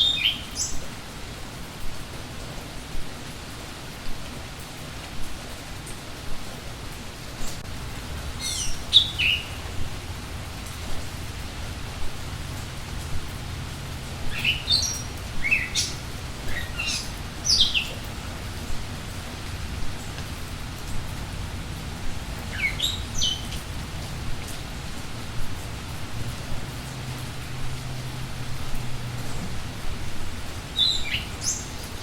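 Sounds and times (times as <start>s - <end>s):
birds chirping: 0.0s - 0.9s, 7.4s - 12.0s, 12.6s - 18.8s, 21.2s - 25.0s, 30.7s - 32.0s
steady rain: 0.0s - 32.0s.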